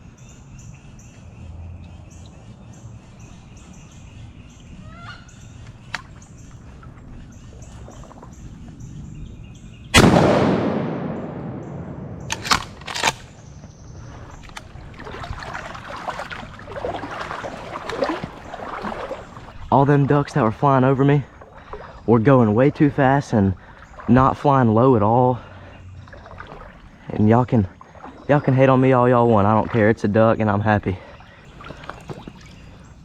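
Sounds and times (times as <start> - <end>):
bird calls: 0.0 - 10.1, 11.0 - 33.0
rustling and splashing: 5.5 - 9.0, 11.4 - 33.0
shotgun blast echoing: 9.9 - 13.5.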